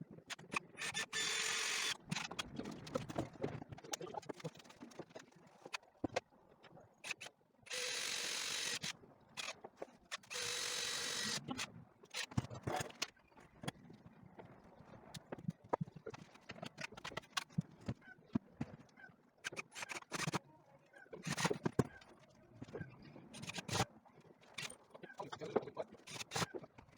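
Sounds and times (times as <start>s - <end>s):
cordless drill driving screws: 0.8s - 2.0s, 7.1s - 9.5s, 10.2s - 11.6s, 26.1s - 26.4s.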